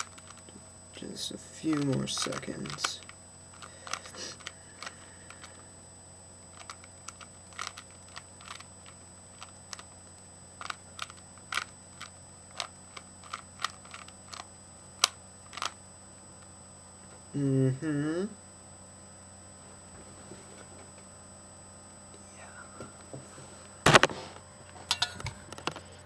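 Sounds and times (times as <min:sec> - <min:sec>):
rubik's cube clicking: 0:00.0 - 0:00.4, 0:01.6 - 0:05.5, 0:06.5 - 0:10.0, 0:10.6 - 0:15.8.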